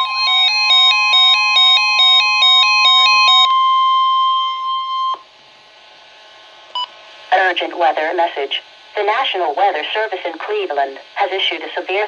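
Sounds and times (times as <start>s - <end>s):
warning alarm tone: 0.0s - 5.3s.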